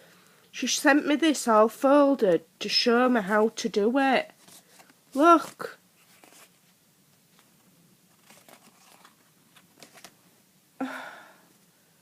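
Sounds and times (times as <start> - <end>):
paper rustling and crinkling: 4.3 - 10.2.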